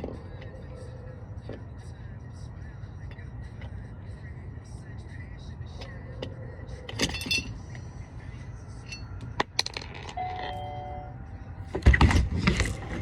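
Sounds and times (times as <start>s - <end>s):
small metal items clinking: 6.9s - 7.5s.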